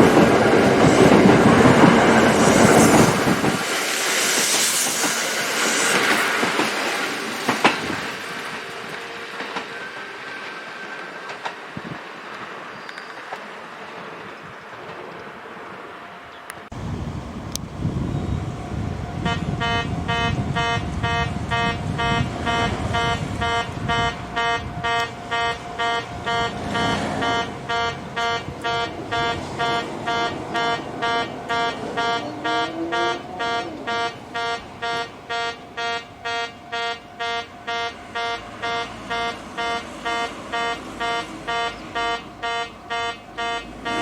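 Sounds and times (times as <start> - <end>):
level crossing warning buzzer: 19.2 - 44.0.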